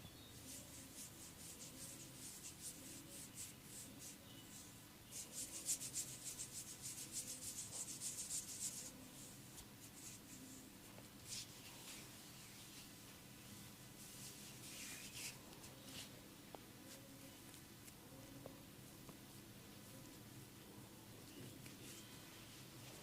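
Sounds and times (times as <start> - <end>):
hands rubbing in rhythmic strokes: 0.4 - 12.9, 14.0 - 16.1.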